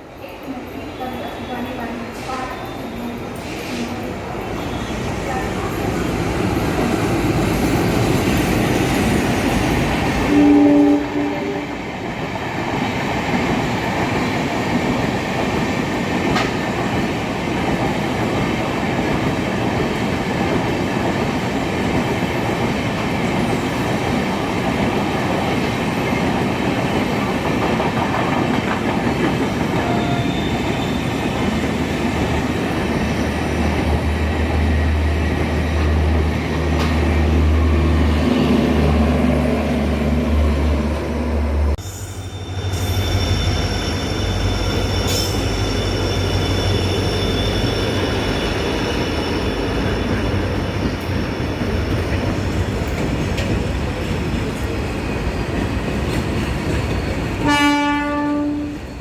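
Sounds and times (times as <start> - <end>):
train wheels rumbling on rails: 0.0 - 59.0
train horn blast: 10.3 - 11.8, 57.4 - 58.8.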